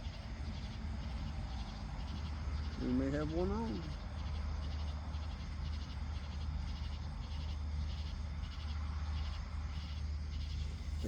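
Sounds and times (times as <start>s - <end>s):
steady low rumble: 0.0s - 8.4s
insects chirping trills: 0.0s - 11.0s.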